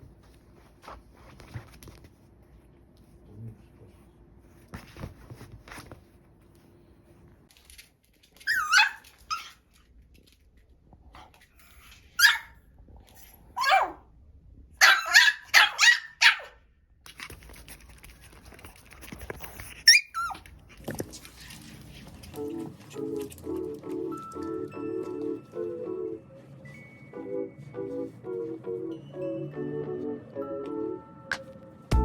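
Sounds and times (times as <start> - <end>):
puppy barking in high-pitched yaps: 8.4 - 9.6, 12.2 - 12.6, 13.6 - 14.0, 14.8 - 16.6.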